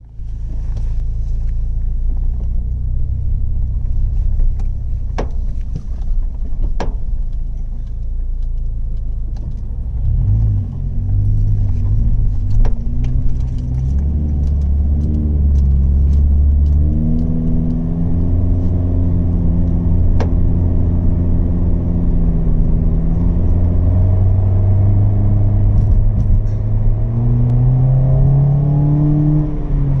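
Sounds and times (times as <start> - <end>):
car engine running: 0.0 - 30.0
sharp pops from car body: 4.6 - 7.9.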